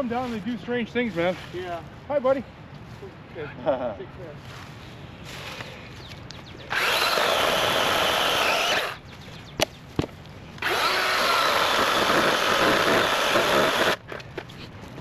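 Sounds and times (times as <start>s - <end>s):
electric chainsaw cutting log: 6.7s - 9.0s, 10.6s - 14.0s.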